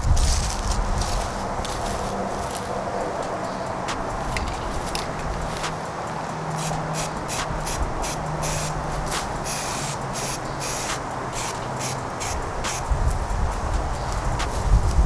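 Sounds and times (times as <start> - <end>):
aerosol can spraying: 6.5 - 14.7.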